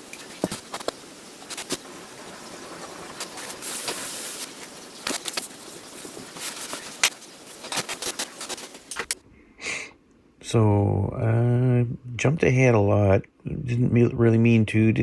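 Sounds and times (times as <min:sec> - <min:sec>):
steady hiss: 0:00.0 - 0:15.0
brushing or scraping: 0:03.1 - 0:08.9.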